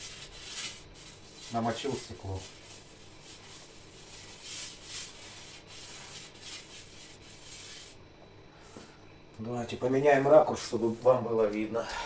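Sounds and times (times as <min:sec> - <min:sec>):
wet sponge scrubbing glass: 0:00.0 - 0:08.0.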